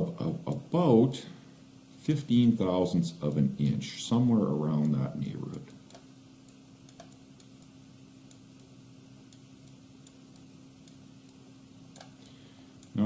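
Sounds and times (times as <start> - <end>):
faint steady hum: 0.0 - 13.0
faint ticks: 4.8 - 8.7.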